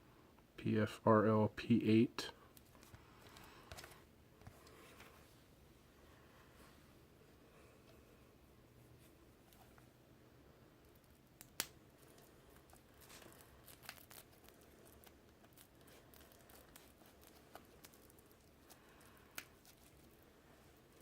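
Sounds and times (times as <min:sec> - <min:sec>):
plastic wrap crinkling and tearing: 0:12.0 - 0:20.2.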